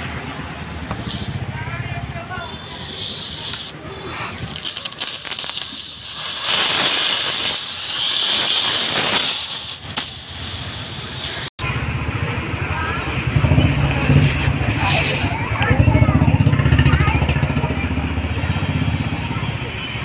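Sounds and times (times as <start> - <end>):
compressed air hissing: 0.0 - 15.7.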